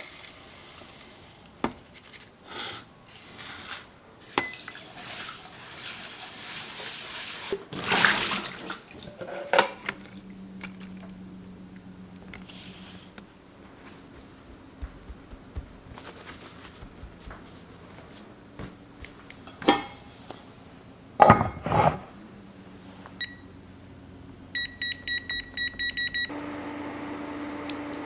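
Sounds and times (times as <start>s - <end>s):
kitchen clatter: 0.0s - 11.2s, 19.0s - 20.5s, 21.2s - 22.2s
appliance humming: 7.8s - 28.0s
dishes knocking: 19.4s - 20.1s, 21.2s - 22.1s
appliance control panel beeps: 23.2s - 23.5s, 24.6s - 26.4s.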